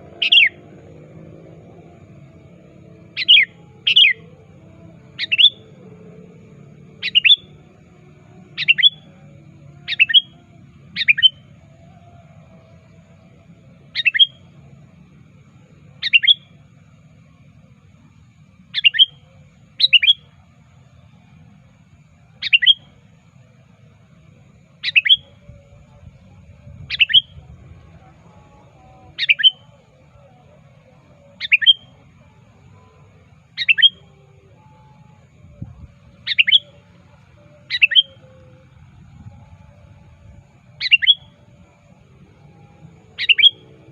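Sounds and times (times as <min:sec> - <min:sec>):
bird calling in sharp bursts: 0:00.0 - 0:00.7, 0:03.1 - 0:04.3, 0:05.2 - 0:05.7, 0:07.0 - 0:07.6, 0:08.6 - 0:09.1, 0:09.8 - 0:10.4, 0:11.0 - 0:11.5, 0:13.9 - 0:14.5, 0:16.0 - 0:16.5, 0:18.7 - 0:20.3, 0:22.4 - 0:23.0, 0:24.8 - 0:25.3, 0:26.9 - 0:27.4, 0:29.1 - 0:29.8, 0:31.3 - 0:32.0, 0:33.4 - 0:34.1, 0:36.2 - 0:36.8, 0:37.4 - 0:38.6, 0:40.8 - 0:41.4, 0:43.1 - 0:43.9
faint low hum: 0:00.0 - 0:43.9.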